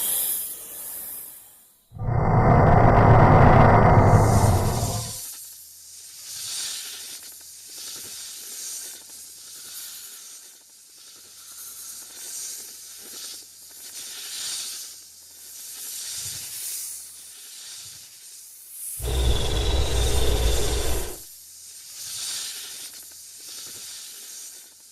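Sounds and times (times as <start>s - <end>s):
long breathy hisses: 2.0s - 5.2s, 19.0s - 21.2s.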